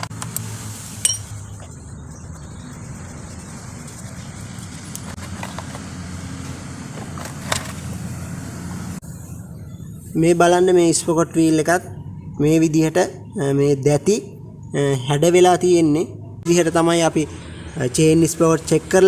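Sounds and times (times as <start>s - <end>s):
steady low hum: 0.0s - 15.4s
metal tools clinking: 1.0s - 1.4s.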